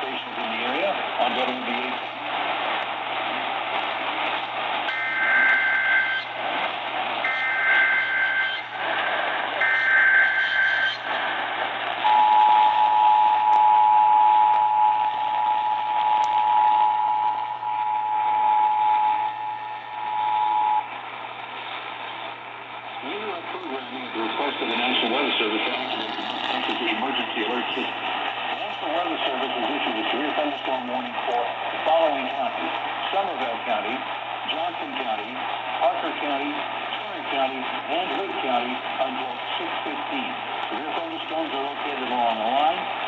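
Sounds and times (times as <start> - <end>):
radio static: 0.0 - 13.6, 14.5 - 43.0
two-tone attention signal: 4.9 - 6.3, 7.3 - 8.7, 9.6 - 11.1, 12.0 - 20.9.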